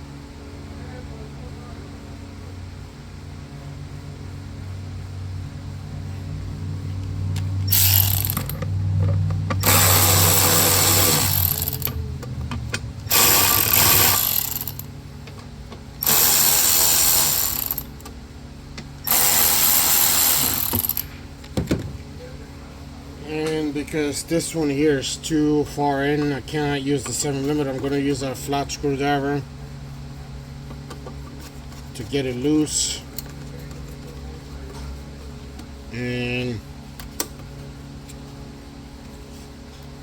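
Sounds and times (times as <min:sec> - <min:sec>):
ratchet clicking: 0:07.4 - 0:08.7, 0:09.6 - 0:12.0, 0:13.0 - 0:14.9, 0:16.0 - 0:18.1, 0:19.0 - 0:21.1.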